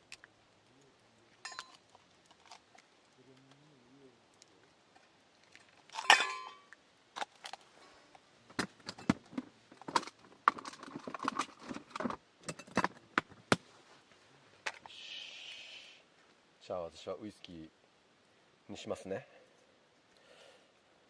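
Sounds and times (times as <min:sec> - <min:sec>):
metal tableware clinking: 0:01.4 - 0:01.8, 0:06.0 - 0:06.7, 0:12.4 - 0:12.9
metal cookware clanking: 0:06.0 - 0:06.6.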